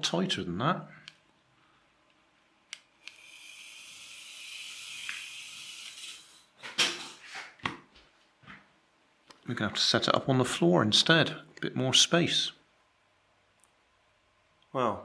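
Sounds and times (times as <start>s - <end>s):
toy car motor whining: 3.0s - 6.3s.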